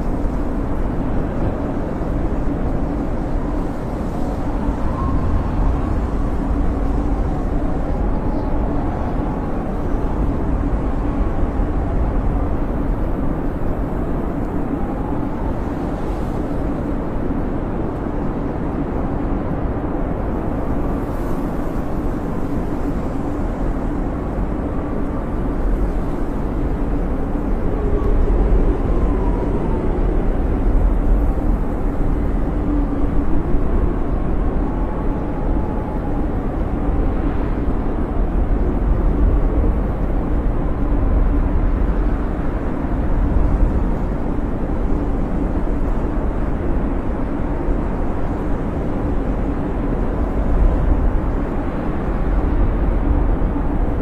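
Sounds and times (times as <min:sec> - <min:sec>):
blizzard wind rumbling: 0:00.0 - 0:54.0
faint wavering whistling tones: 0:04.2 - 0:10.3.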